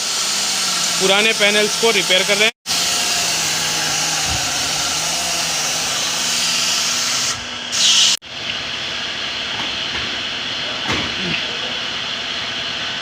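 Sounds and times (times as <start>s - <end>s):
abrasive power tool hissing: 0.0s - 8.2s.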